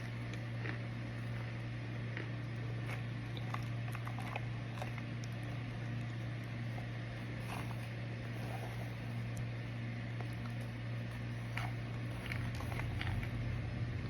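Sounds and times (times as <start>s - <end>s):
microwave oven humming: 0.0s - 14.0s.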